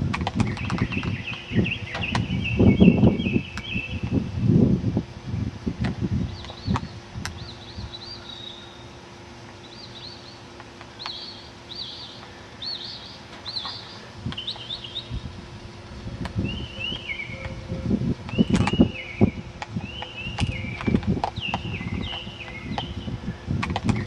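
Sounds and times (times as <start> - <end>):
faint steady hum: 0.0 - 24.0
small birds chirping: 0.1 - 4.5, 6.1 - 24.0
low rumbling: 11.8 - 24.0.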